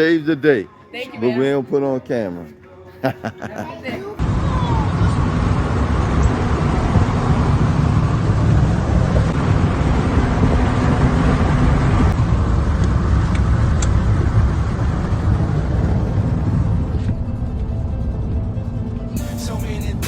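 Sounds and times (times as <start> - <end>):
car engine and road rumble: 4.2 - 20.0.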